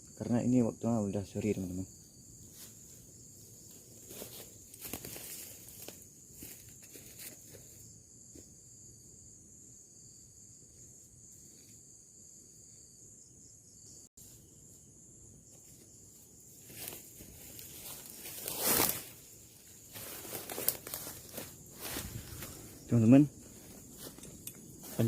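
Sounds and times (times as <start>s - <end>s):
insects chorus: 0.0s - 25.0s
rustling: 16.6s - 22.7s.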